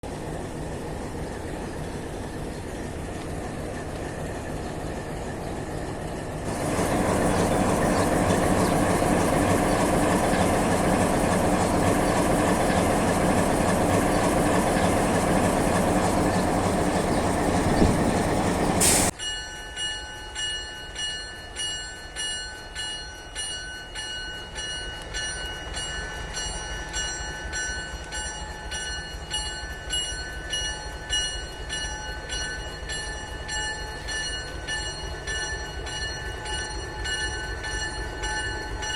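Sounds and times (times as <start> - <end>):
diesel locomotive engine running: 0.0 - 19.2.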